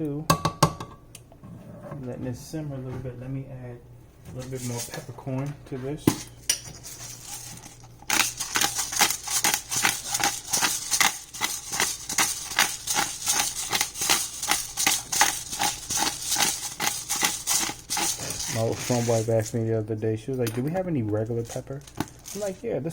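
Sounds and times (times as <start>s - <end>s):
pepper grinder crunching clicks: 8.0s - 19.1s.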